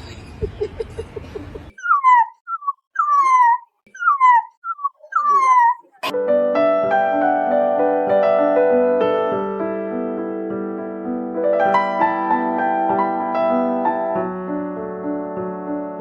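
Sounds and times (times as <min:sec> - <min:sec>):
dog whining: 0:01.7 - 0:06.0
piano music: 0:06.1 - 0:16.0.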